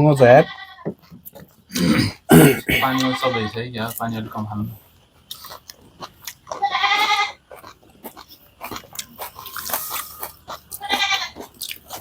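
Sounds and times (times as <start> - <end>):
crunching and chewing: 0.9 - 3.2, 4.8 - 12.0
person bleating vocal sound: 1.8 - 3.3.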